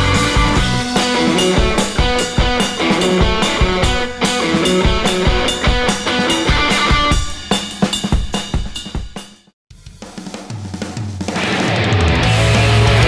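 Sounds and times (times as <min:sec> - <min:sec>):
rock music with guitar and drums: 0:00.0 - 0:08.4, 0:11.3 - 0:13.0.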